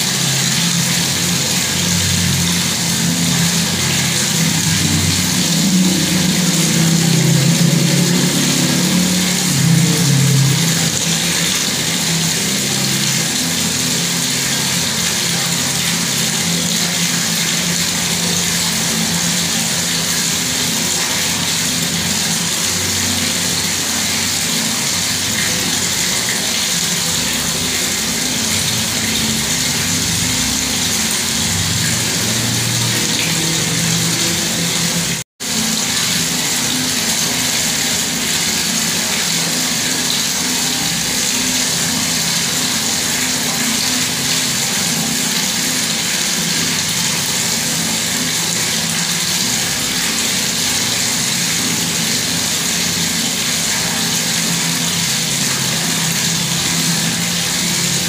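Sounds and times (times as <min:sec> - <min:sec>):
water tap running: 0:00.0 - 0:58.0
low hum: 0:00.9 - 0:14.1.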